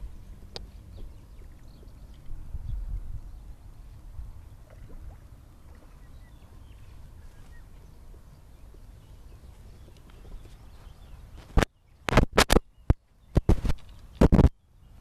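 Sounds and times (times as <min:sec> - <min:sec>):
steady low rumble: 0:00.0 - 0:11.4
faint bird chirps: 0:05.7 - 0:14.0.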